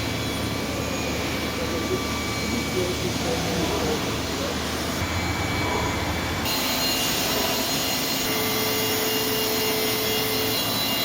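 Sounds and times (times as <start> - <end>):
grinding machine running: 0.0 - 11.0
steady tone: 2.4 - 11.0.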